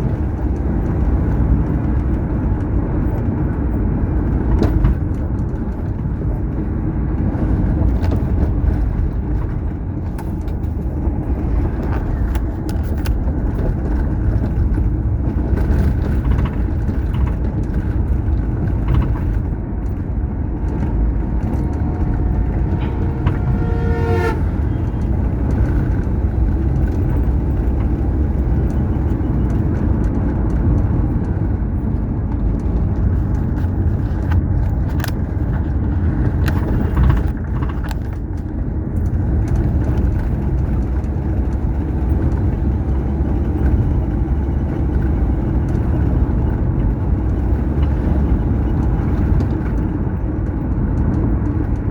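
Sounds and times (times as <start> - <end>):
car driving on highway: 0.0 - 51.9
car horn toot: 21.4 - 26.0.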